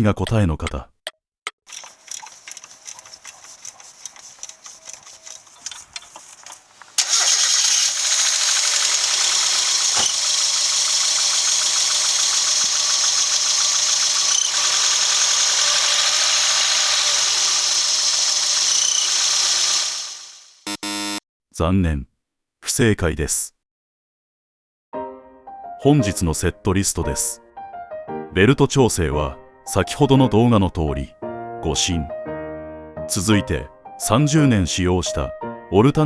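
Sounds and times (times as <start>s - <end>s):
car engine starting and idling: 2.9s - 20.7s
high-pitched engine whine: 3.0s - 21.2s.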